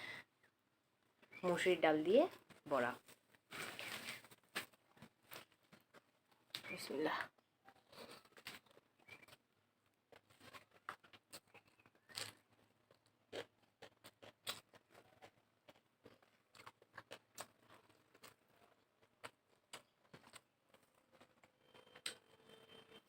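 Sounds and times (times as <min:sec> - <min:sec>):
chewing and mouth smacks: 0:07.4 - 0:22.2.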